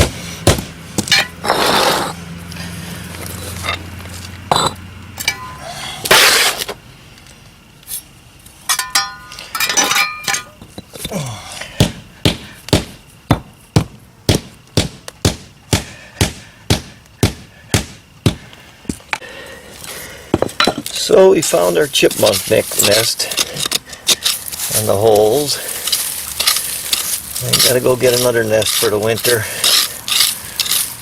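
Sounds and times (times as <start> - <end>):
rubber mallet striking pavers: 0.0 - 1.6, 10.8 - 19.0
pavers and tools scraping: 1.0 - 6.8, 19.8 - 31.0.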